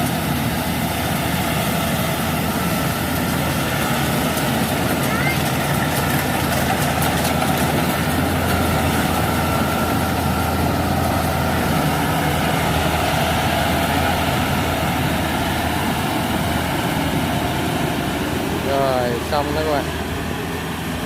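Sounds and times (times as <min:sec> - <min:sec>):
diesel engine droning: 0:00.0 - 0:21.0.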